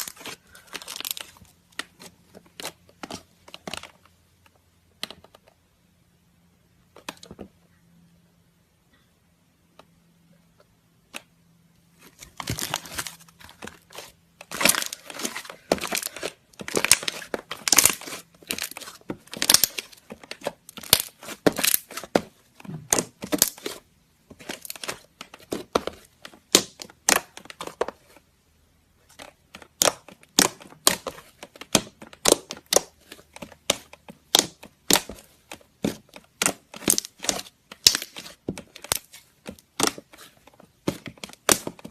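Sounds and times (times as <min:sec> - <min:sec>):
slime crackling and popping: 0:13.7 - 0:23.8, 0:24.4 - 0:27.8, 0:29.6 - 0:41.9.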